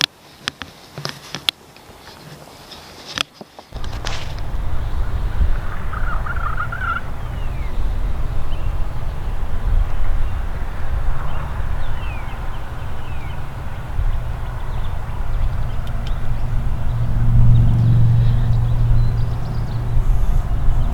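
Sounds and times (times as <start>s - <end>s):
turkey gobbling: 3.8s - 16.4s
falling bird chirps: 3.8s - 20.4s
low rumble: 3.8s - 20.9s.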